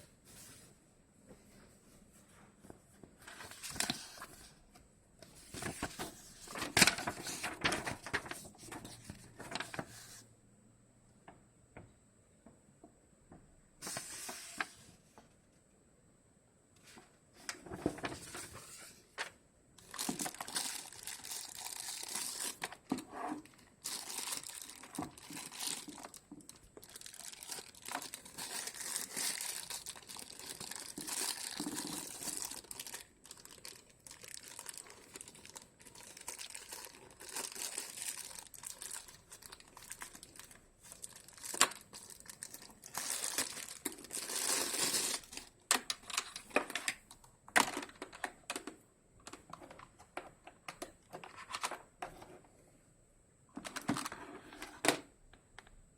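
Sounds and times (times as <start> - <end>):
packaging crinkling and rustling: 3.2 - 4.6, 5.2 - 10.2, 17.4 - 48.4.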